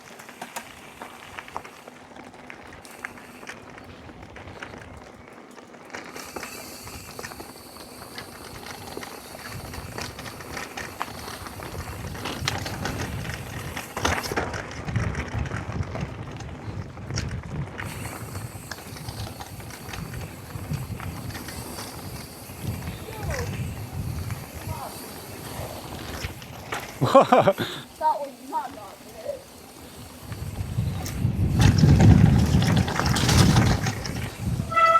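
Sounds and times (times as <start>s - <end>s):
wind: 0.0s - 34.9s
tyre rumble on dirt: 30.2s - 34.9s.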